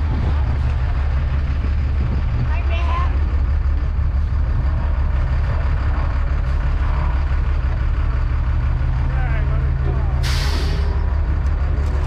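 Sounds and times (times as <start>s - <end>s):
heavy engine idling: 0.0s - 12.0s.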